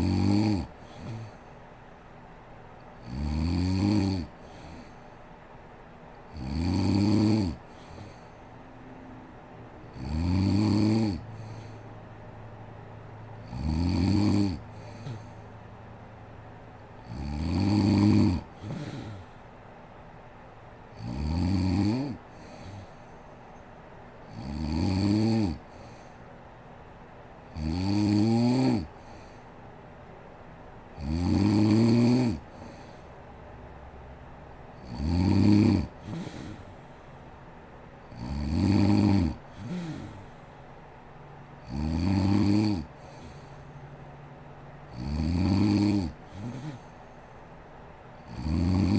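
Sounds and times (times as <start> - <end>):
woman snoring loudly: 0.0 - 1.3, 3.0 - 4.8, 6.3 - 8.1, 9.9 - 11.6, 13.4 - 15.2, 17.0 - 19.2, 21.0 - 22.8, 24.3 - 25.6, 27.6 - 28.9, 31.0 - 32.8, 34.8 - 36.7, 38.1 - 40.3, 41.6 - 42.9, 45.0 - 46.8, 48.3 - 48.9
short quiet breath: 36.0 - 37.3.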